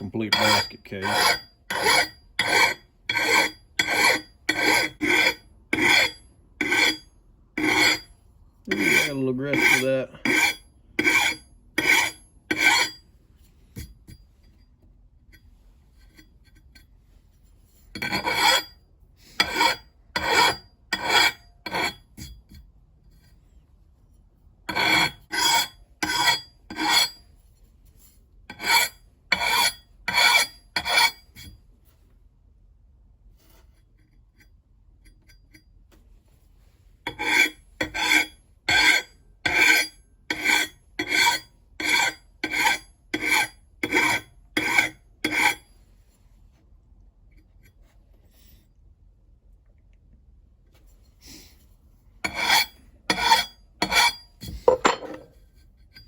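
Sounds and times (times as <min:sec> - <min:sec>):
file rasping on axe edge: 0:00.0 - 0:07.0, 0:07.6 - 0:08.1, 0:08.7 - 0:13.0, 0:17.9 - 0:18.8, 0:19.4 - 0:22.1, 0:24.7 - 0:27.2, 0:28.5 - 0:31.2, 0:37.1 - 0:45.7, 0:52.2 - 0:55.3.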